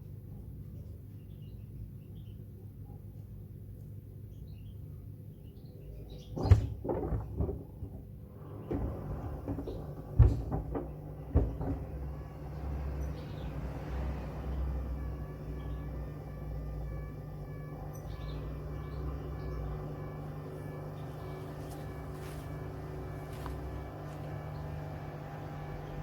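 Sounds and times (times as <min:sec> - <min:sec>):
wood knocking in washing machine: 0:06.4 - 0:13.0
washing machine humming: 0:06.4 - 0:26.0.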